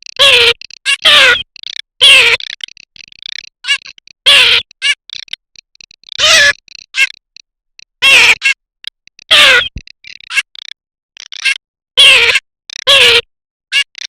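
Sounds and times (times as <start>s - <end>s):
duck giving falling calls: 0.2s - 1.4s, 3.6s - 5.3s, 6.1s - 7.2s, 8.0s - 8.6s, 9.3s - 10.4s.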